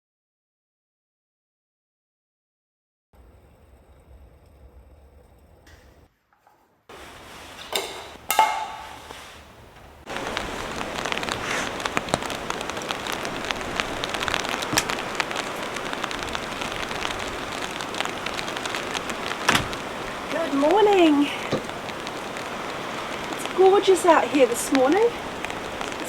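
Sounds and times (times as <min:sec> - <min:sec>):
steady rain patter: 0:06.9 - 0:26.0.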